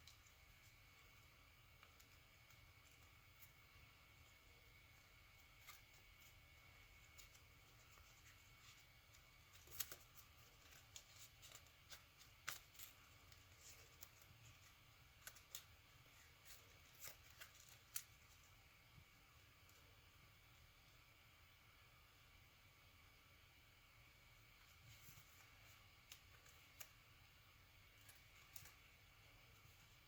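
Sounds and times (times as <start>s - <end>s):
paper folding and creasing: 5.3s - 18.4s.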